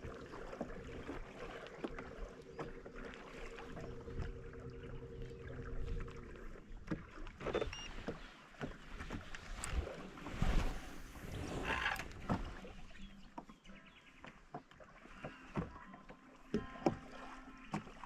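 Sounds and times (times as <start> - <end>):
boat motor humming: 0.0 - 12.7
gear knocking on hull: 0.7 - 7.6.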